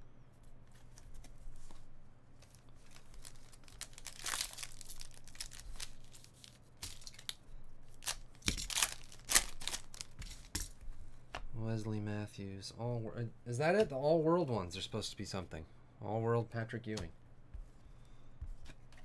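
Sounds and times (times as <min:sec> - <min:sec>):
foil pack tearing and crinkling: 0:02.8 - 0:07.4, 0:08.0 - 0:10.2.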